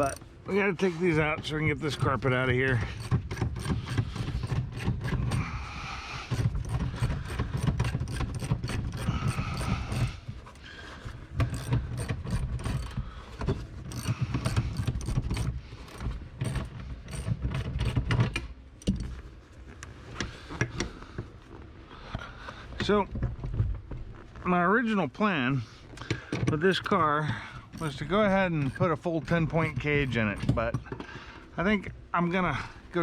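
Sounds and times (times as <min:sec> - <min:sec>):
hand ratchet clicking: 0:00.0 - 0:00.2, 0:02.7 - 0:05.6, 0:06.3 - 0:10.2, 0:11.4 - 0:19.0, 0:27.6 - 0:30.6
metal scraping and knocking: 0:00.0 - 0:05.5, 0:06.3 - 0:10.3, 0:11.4 - 0:19.1, 0:27.7 - 0:31.0.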